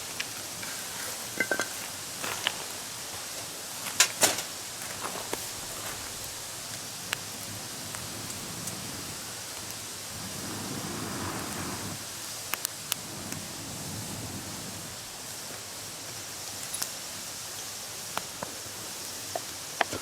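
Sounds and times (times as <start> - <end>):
campfire crackling and popping: 0.0 - 20.0.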